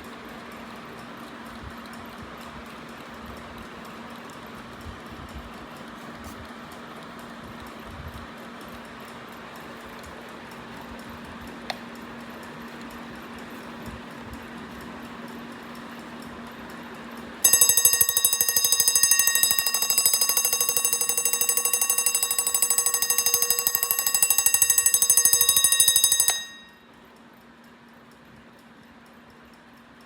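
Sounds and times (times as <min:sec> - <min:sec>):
alarm clock bell ringing: 0:17.4 - 0:26.9.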